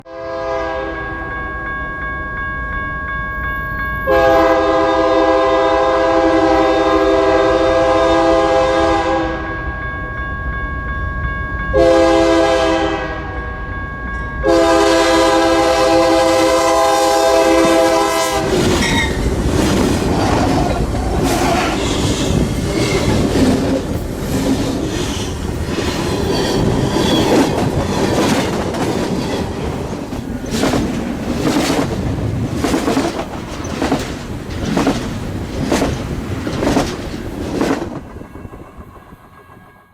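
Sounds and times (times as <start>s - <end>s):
train horn blasts: 0.0s - 1.4s, 4.0s - 9.7s, 11.7s - 13.6s, 14.4s - 19.3s
train passing with loud rumble: 3.7s - 39.9s
wheels clattering on rails: 17.5s - 38.3s.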